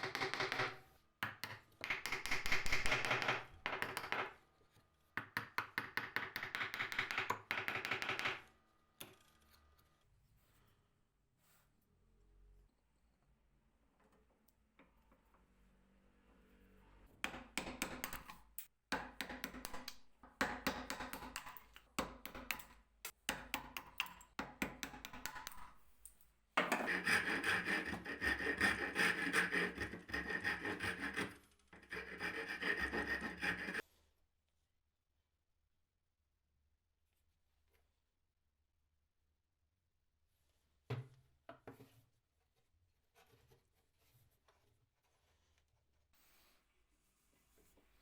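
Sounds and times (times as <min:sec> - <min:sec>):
hand tool rubbing on wood: 0:26.6 - 0:33.8.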